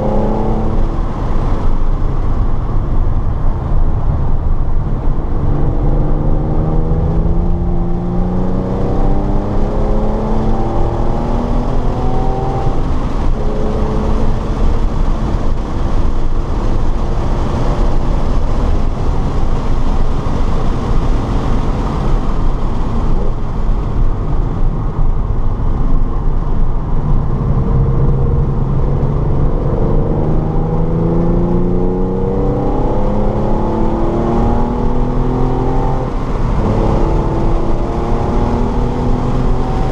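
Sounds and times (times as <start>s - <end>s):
rushing wind and tyre noise: 0.0s - 39.9s
race car engine accelerating: 5.0s - 18.4s, 26.9s - 39.9s.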